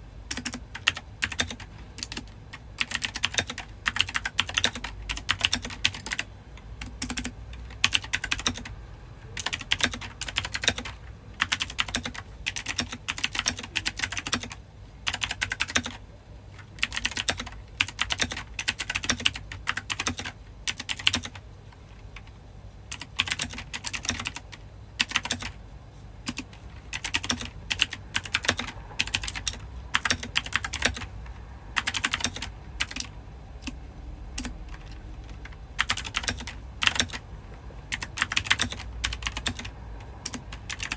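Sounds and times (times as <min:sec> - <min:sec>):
mechanical keyboard typing: 0:00.3 - 0:16.0, 0:16.6 - 0:25.6, 0:26.2 - 0:40.9.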